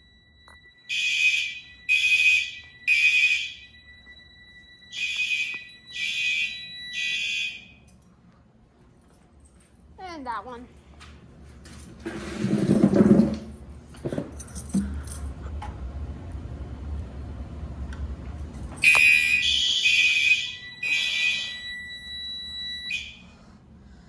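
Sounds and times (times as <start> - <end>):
fire alarm sounder tone: 0.0 - 8.1, 18.6 - 23.6.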